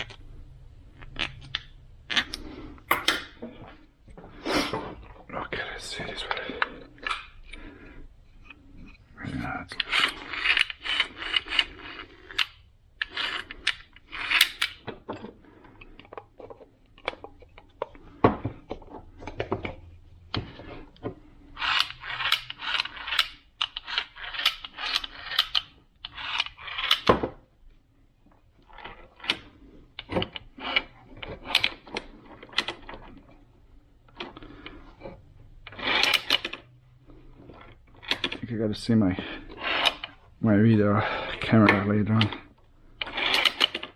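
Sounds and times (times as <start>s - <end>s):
tools rattling and scraping: 1.0s - 5.2s, 8.4s - 27.3s, 34.1s - 43.9s
sharp clicks of small parts: 13.6s - 14.8s.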